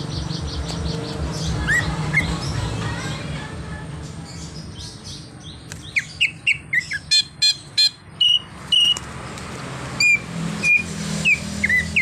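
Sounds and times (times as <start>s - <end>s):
bird singing mimicked calls: 0.2s - 2.6s, 5.9s - 9.0s, 10.0s - 12.0s.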